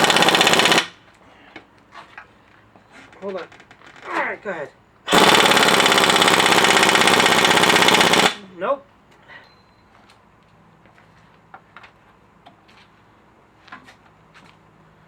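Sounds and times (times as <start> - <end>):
pneumatic impact wrench hammering: 0.0 - 0.9, 5.1 - 8.4.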